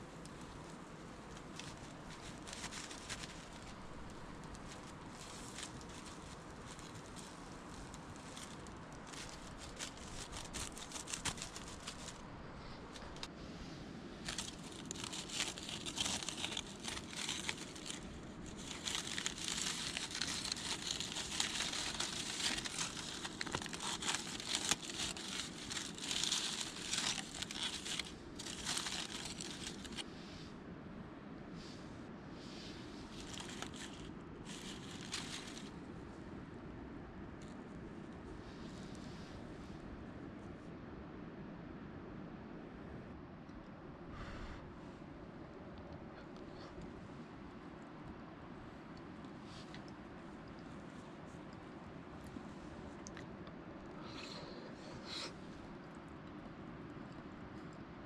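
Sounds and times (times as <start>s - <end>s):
crinkly wrapping crumpled: 0.0s - 13.3s, 14.2s - 30.1s, 33.0s - 35.9s.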